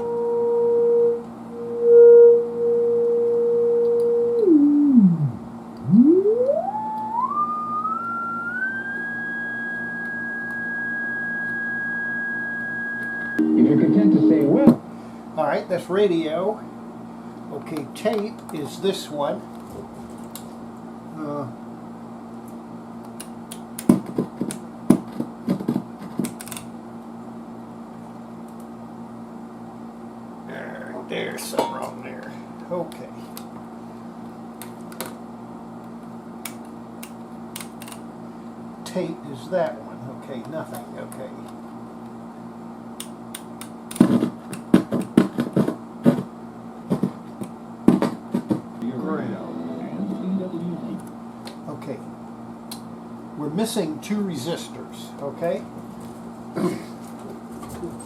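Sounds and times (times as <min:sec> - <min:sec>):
amplifier humming: 0:00.0 - 0:14.8, 0:48.8 - 0:51.3.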